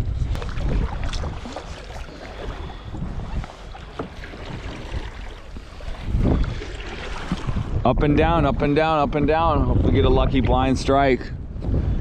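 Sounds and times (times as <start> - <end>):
water sounds: 0.0 - 10.9
wind buffeting microphone: 0.0 - 12.0
small splashes: 0.3 - 7.6.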